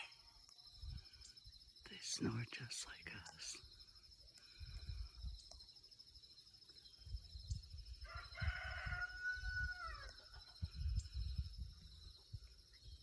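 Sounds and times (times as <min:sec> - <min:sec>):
rooster crowing: 0:08.0 - 0:10.3.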